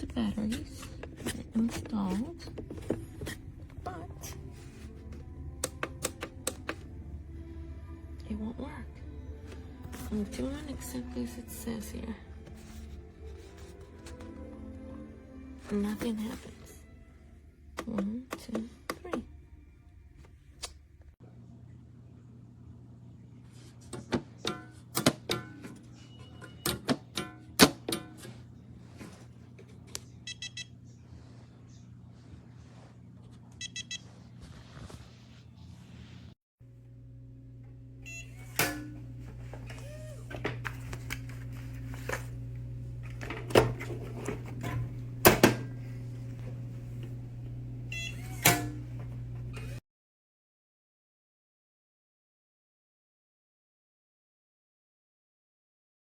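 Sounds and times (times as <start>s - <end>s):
steady low hum: 0.0s - 26.4s, 35.2s - 49.8s.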